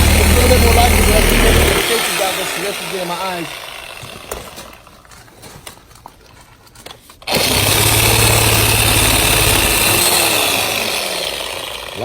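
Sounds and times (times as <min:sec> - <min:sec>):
reciprocating saw cutting wood: 0:00.0 - 0:05.0, 0:07.3 - 0:12.0.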